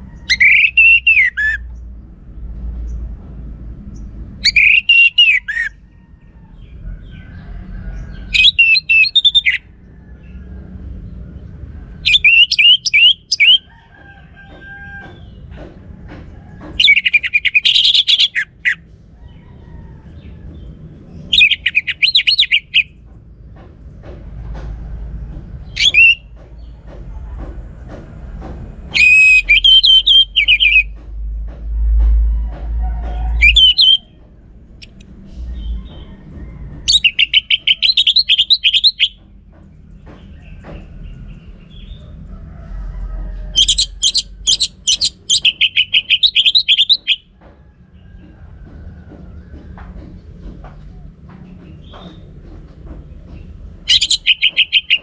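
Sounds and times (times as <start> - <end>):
thrush singing: 0.2 - 1.6, 4.4 - 5.8, 8.3 - 9.6, 12.0 - 13.7, 16.8 - 18.8, 21.3 - 22.9, 33.4 - 34.0, 36.9 - 39.2, 43.5 - 47.2, 53.9 - 55.0.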